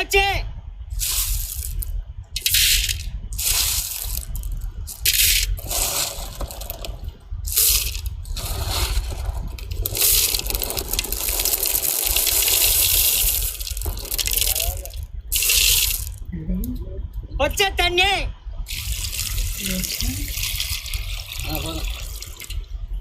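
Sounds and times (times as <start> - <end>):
snail shells rattling in water: 1.0 - 16.3.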